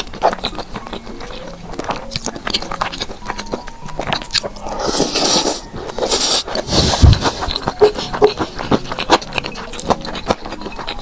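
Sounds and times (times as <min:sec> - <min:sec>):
chewing and crunching food: 0:00.0 - 0:11.0.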